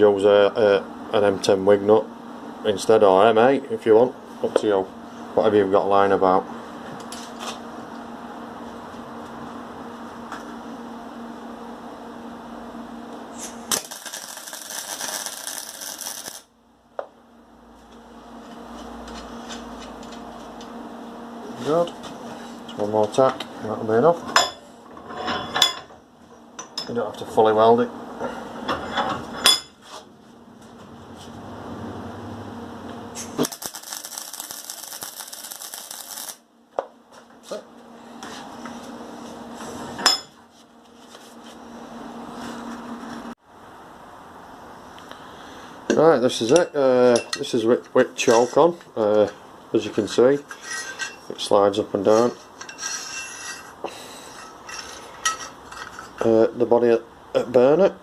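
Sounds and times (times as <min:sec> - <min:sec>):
steady hum: 0:00.0 - 0:58.0
welding arc crackle: 0:13.4 - 0:16.5, 0:33.2 - 0:36.4.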